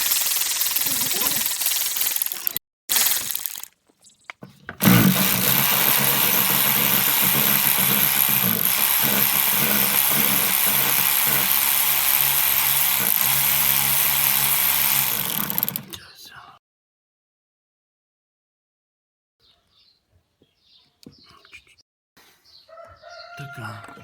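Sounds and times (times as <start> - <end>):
power tool motor running: 0.0 - 3.7, 4.8 - 15.9.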